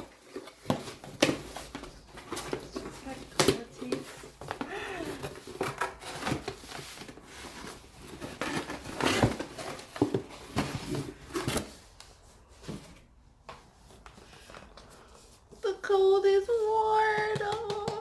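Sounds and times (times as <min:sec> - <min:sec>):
packaging rustling and tearing: 0:00.0 - 0:13.1.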